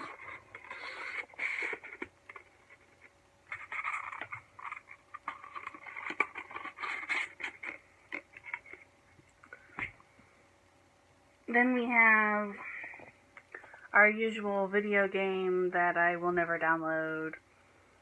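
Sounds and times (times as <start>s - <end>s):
packaging rustling and crinkling: 0.0s - 8.9s.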